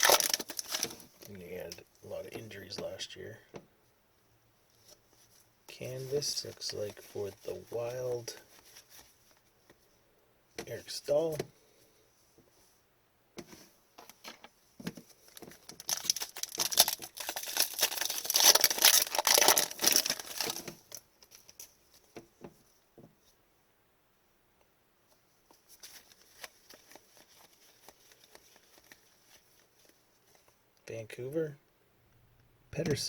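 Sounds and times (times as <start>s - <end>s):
foil wrapper tearing and crinkling: 0.0s - 1.1s, 15.3s - 21.7s, 25.8s - 30.0s
cards rustling and clicking: 0.0s - 1.7s, 4.8s - 9.8s, 14.0s - 22.2s, 25.5s - 30.6s.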